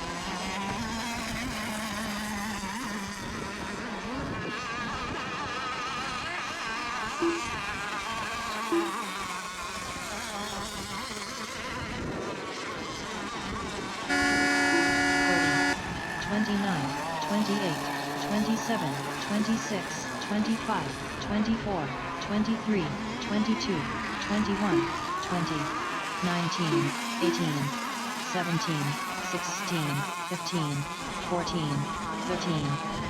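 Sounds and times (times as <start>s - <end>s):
model boat engines buzzing: 0.0s - 33.0s
loud steady horn: 14.1s - 17.6s.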